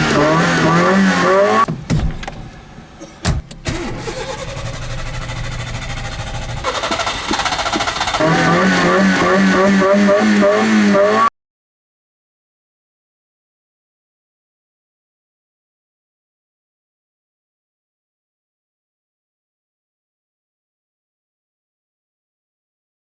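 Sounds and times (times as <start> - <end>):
engine cranking on starter motor: 0.0 - 11.3
sharp knocks: 1.6 - 3.6.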